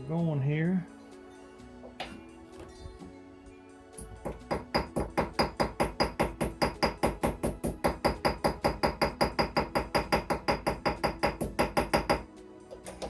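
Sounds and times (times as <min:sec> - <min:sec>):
small hammer tapping metal pins: 0:04.0 - 0:13.0.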